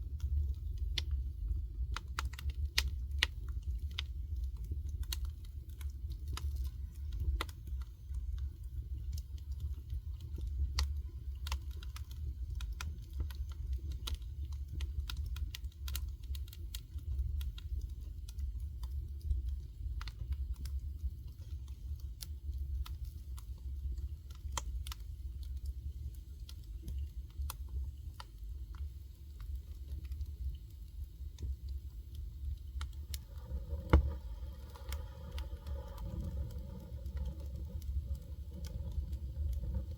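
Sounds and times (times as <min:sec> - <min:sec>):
low steady rumble: 0:00.0 - 0:39.9
wood fire crackling: 0:00.0 - 0:39.9.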